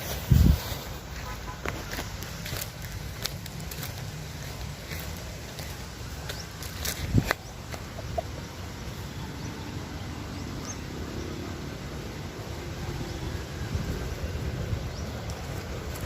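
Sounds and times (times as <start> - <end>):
chickens clucking: 3.2 - 9.5.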